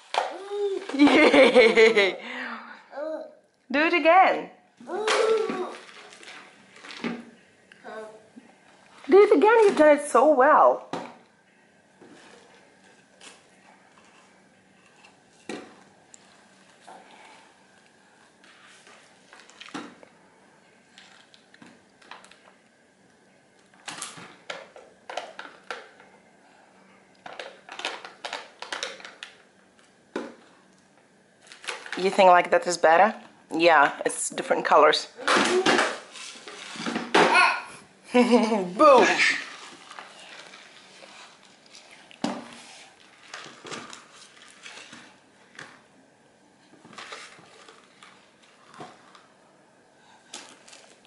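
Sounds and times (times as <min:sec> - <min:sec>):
small objects clattering on tabletop: 0:27.2 - 0:29.4.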